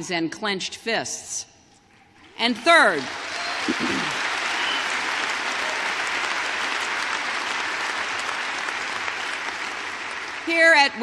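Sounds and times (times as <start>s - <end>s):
large audience applauding: 2.7s - 11.0s.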